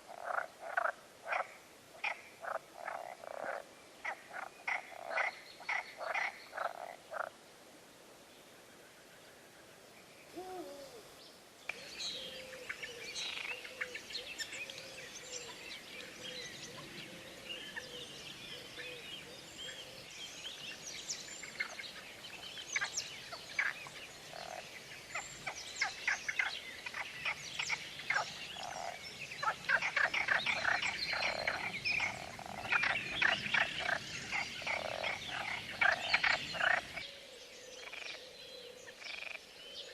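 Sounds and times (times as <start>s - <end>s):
frogs croaking in chorus: 0.0s - 7.4s, 11.7s - 18.0s, 21.4s - 39.9s
birds chirping and singing: 11.7s - 39.9s.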